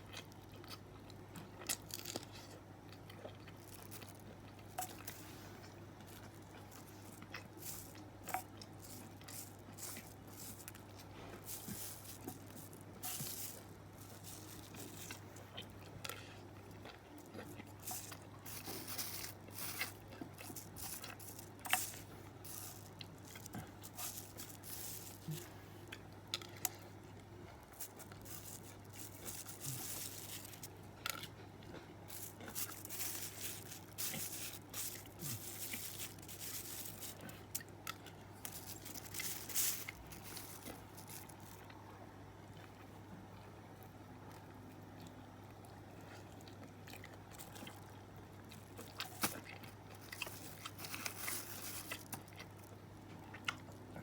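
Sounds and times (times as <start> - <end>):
person chewing and biting: 0.0 - 26.8, 27.5 - 41.8, 48.5 - 54.0
steady low hum: 0.0 - 54.0
sharp clicks and crinkles: 27.7 - 41.8, 48.8 - 52.7.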